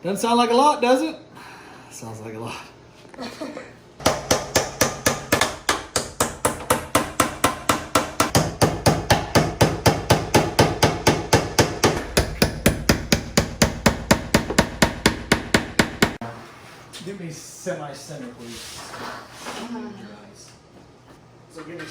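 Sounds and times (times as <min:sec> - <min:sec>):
hammer blows: 0:04.0 - 0:16.2.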